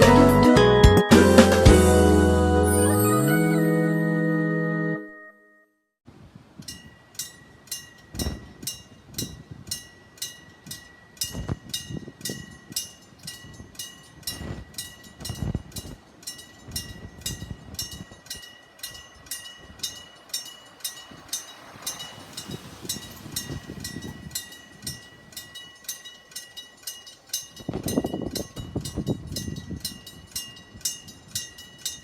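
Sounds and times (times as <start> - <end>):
railway crossing bell ringing: 6.7 - 32.0.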